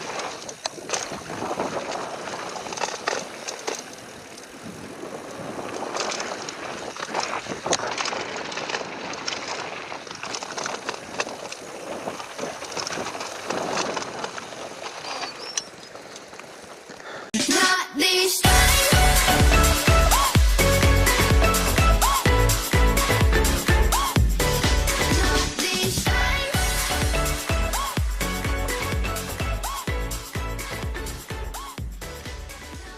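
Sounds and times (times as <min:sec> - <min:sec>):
bike rattling and knocking: 0:00.0 - 0:17.2
bike tyres rolling over dirt: 0:00.0 - 0:17.4, 0:18.4 - 0:32.9.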